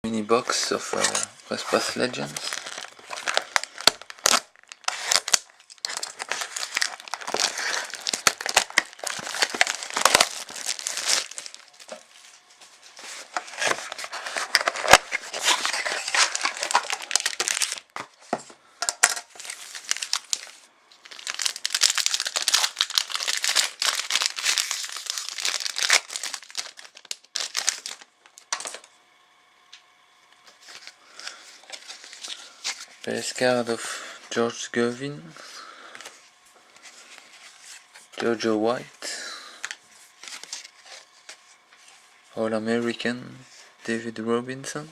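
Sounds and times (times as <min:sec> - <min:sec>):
plastic and foil wrapping crinkling: 0:00.1 - 0:28.9, 0:30.4 - 0:38.5, 0:39.1 - 0:44.9.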